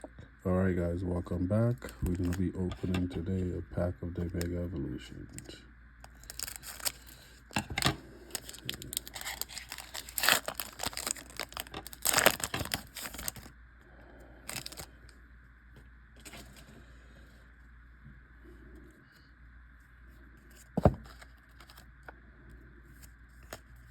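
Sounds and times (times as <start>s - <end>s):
foil wrapper crinkling and tearing: 1.8s - 2.9s, 6.0s - 13.5s, 14.4s - 14.9s, 21.1s - 21.9s.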